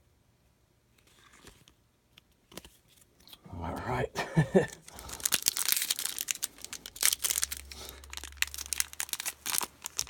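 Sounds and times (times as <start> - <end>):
wrapper tearing and crinkling: 4.6 - 10.0.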